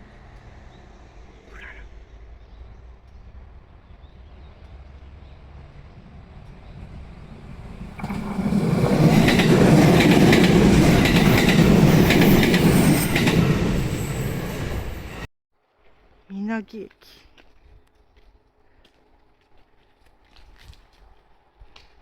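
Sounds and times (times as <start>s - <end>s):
electric train passing: 0.0s - 15.3s
train wheels clacking on rail joints: 6.3s - 14.2s.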